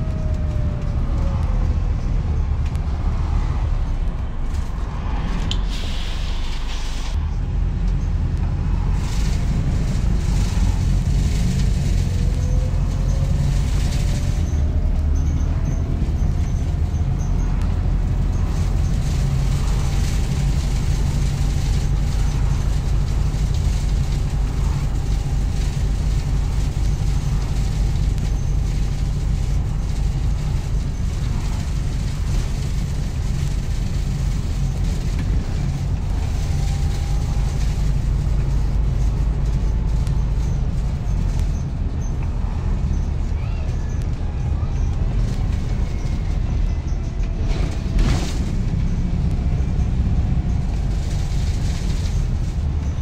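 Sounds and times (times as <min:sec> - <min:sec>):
rising engine whine: 0:00.0 - 0:20.6
bus diesel engine rumble: 0:00.0 - 0:53.0
bus body rattles: 0:01.6 - 0:53.0.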